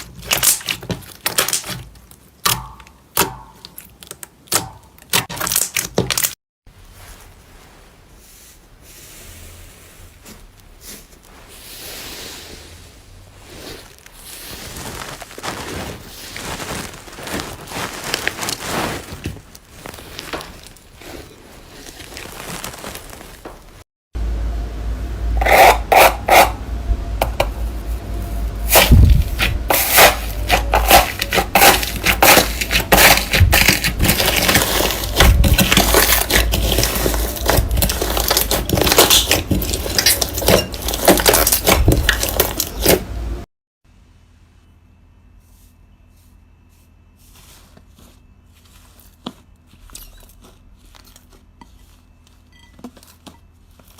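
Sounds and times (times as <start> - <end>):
slime crackling and scraping: 3.6 - 23.8, 27.7 - 43.3, 45.4 - 53.9
sharp crackles and pops: 21.8 - 23.8
low hum: 24.2 - 25.5, 26.5 - 32.1.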